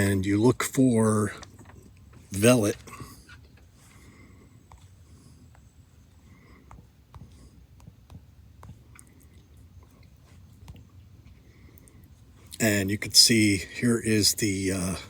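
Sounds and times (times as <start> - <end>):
low steady hum: 0.0 - 15.0
fingers tapping touchscreen: 6.5 - 9.1.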